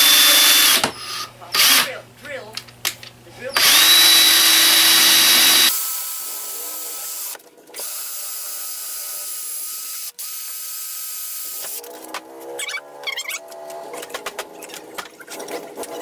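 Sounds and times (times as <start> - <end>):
power tool cutting plastic: 0.0 - 2.0, 3.6 - 11.8.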